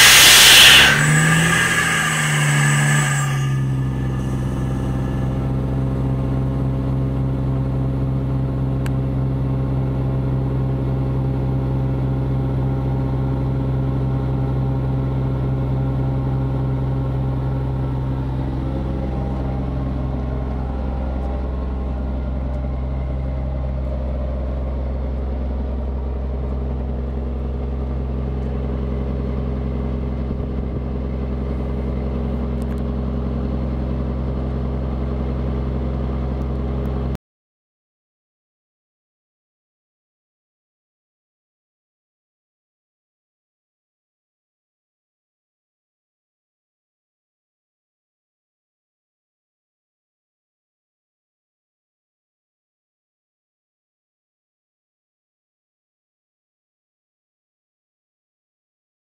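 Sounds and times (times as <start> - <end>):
air hissing: 0.0 - 5.6
diesel compressor engine running: 0.0 - 37.2.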